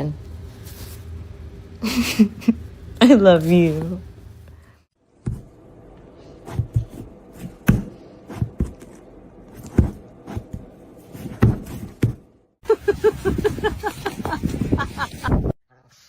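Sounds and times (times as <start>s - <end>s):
faint steady hum: 0.0s - 12.6s.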